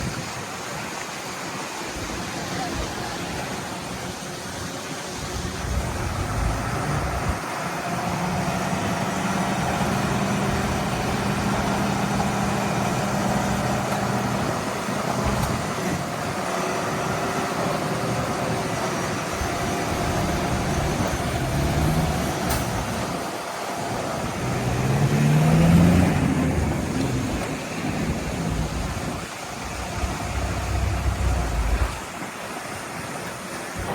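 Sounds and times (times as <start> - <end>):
heavy diesel engine revving: 5.2 - 32.1.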